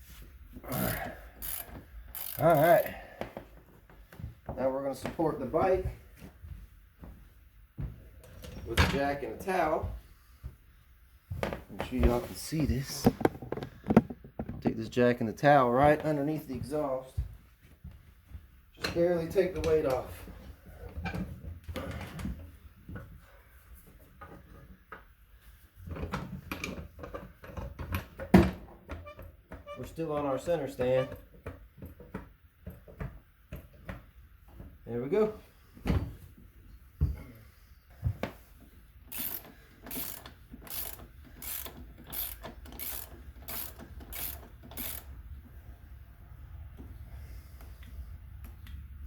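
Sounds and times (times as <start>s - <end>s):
ratchet wrench clicking: 0.8s - 2.9s, 39.1s - 45.2s
jack clunking and knocking: 11.4s - 14.8s.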